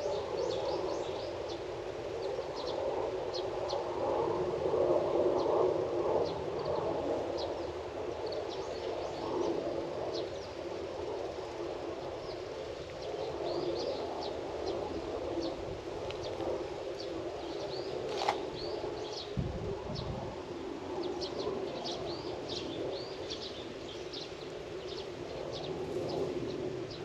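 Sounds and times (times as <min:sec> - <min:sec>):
small birds chirping: 0:12.1 - 0:20.2, 0:21.0 - 0:27.0.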